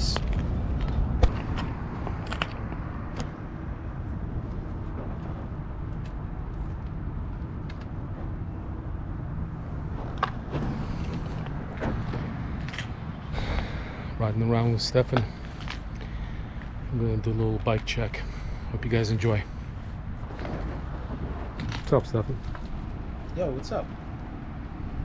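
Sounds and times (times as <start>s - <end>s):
passing cars rumbling: 0.0s - 25.0s.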